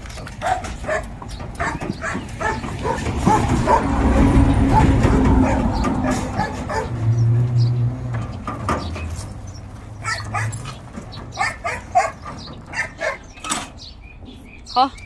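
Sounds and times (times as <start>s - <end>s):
dog barking and yipping: 0.4s - 3.9s, 4.7s - 7.0s, 9.9s - 13.4s.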